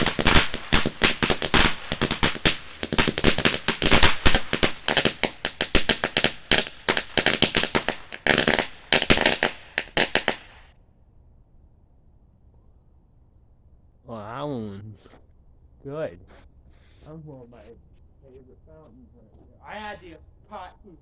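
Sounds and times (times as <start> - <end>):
firework fountain crackling: 0.0 - 10.7.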